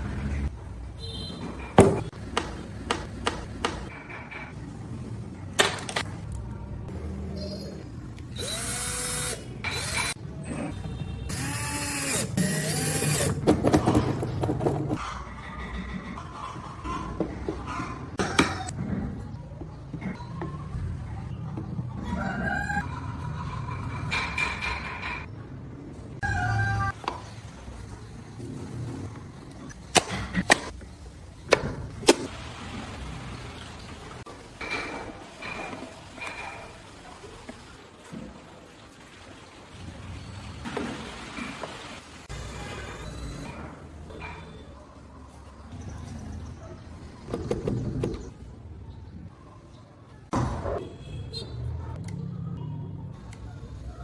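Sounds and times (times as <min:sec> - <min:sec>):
power carving tool cutting wood: 0:08.4 - 0:10.2.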